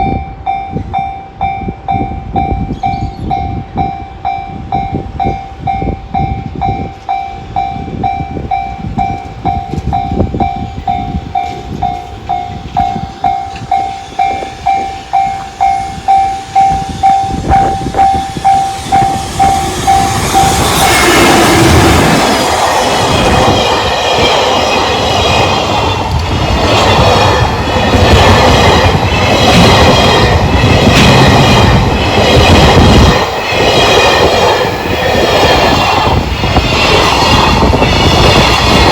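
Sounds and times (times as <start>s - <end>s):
level-crossing alarm dinging: 0.0s - 26.1s
freight train passing: 0.0s - 38.9s.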